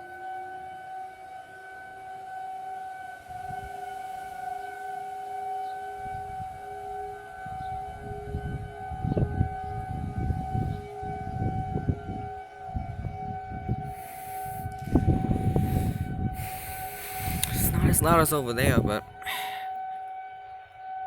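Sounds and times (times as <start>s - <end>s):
warning sirens steady tone: 0.0s - 21.0s
low microphone rumbles: 14.8s - 19.2s.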